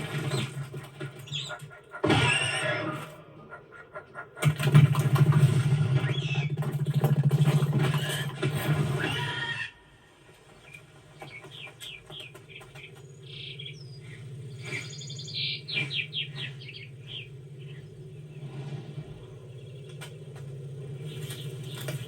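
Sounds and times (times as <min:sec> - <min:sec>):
loud noise: 0:00.0 - 0:03.5
bird chirping: 0:00.0 - 0:04.7, 0:10.3 - 0:22.0
faint steady hum: 0:09.7 - 0:22.0.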